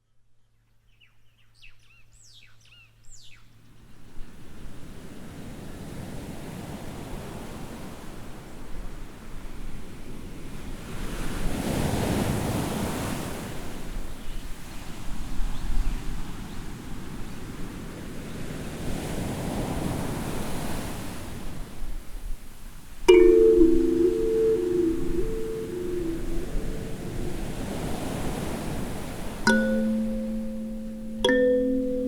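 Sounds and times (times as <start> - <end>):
wind: 0.0 - 32.0
ocean surf washing in: 23.1 - 32.0.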